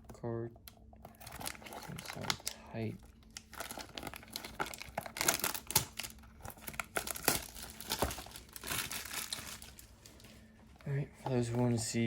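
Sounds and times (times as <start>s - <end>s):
plastic wrap crinkling and tearing: 1.1s - 10.4s.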